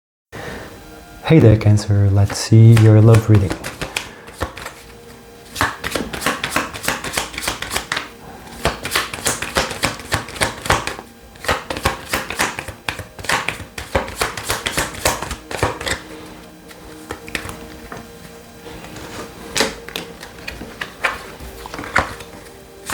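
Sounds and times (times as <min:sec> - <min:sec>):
cards being shuffled: 0:01.4 - 0:22.9.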